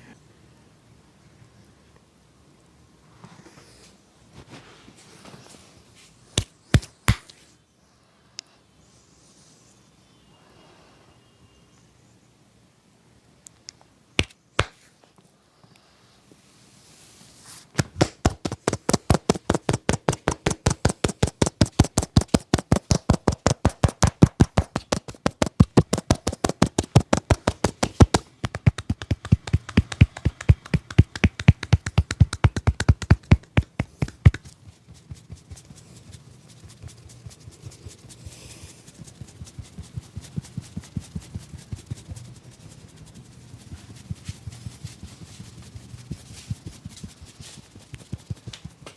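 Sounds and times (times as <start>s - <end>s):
hands slapping and tapping skin: 6.4s - 7.4s, 14.2s - 14.8s, 17.8s - 35.8s, 44.0s - 48.9s
soft tapping: 17.8s - 35.7s.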